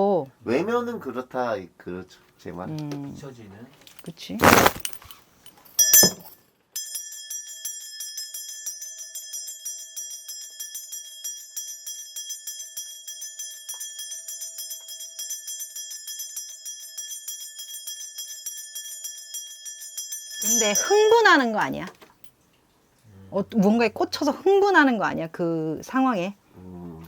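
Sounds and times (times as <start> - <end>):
bell cluster jingling: 5.8 - 7.6, 14.1 - 21.9.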